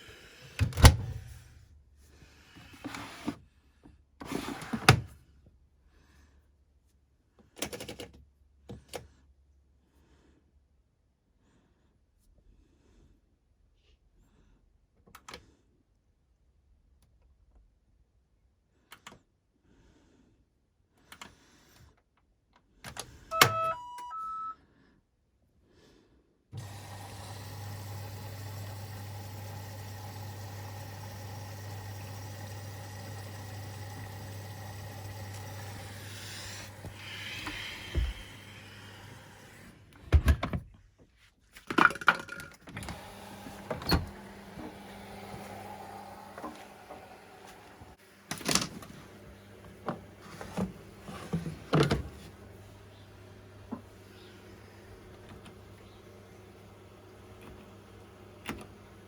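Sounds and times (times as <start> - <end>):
washing machine humming: 0.0 - 1.6, 26.6 - 40.4, 42.7 - 59.0
washing machine beeping: 23.3 - 24.6, 26.6 - 39.6, 42.9 - 59.0.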